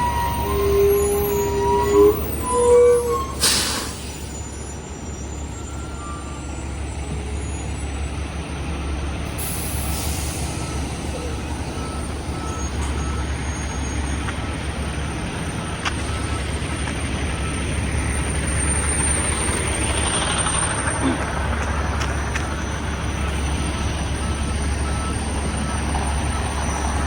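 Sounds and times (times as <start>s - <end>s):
backup alarm beeping: 0.0s - 4.2s
air hissing: 0.0s - 4.5s
diesel machinery rumbling: 0.0s - 27.0s.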